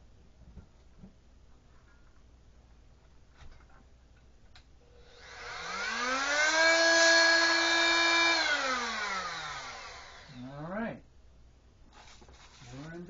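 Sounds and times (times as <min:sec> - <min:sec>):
oscillating sander motor whine: 0:05.0 - 0:10.6.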